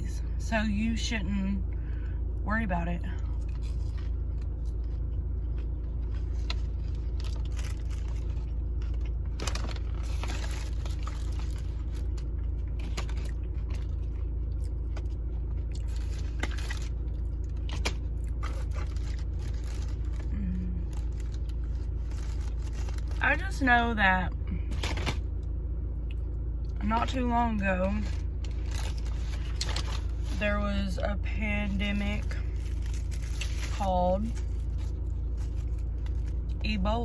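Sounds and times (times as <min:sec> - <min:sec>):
car idling hum: 0:00.0 - 0:37.0
food packaging rustling: 0:03.4 - 0:15.2, 0:15.8 - 0:20.3, 0:20.9 - 0:23.2, 0:28.0 - 0:30.4, 0:31.9 - 0:36.6.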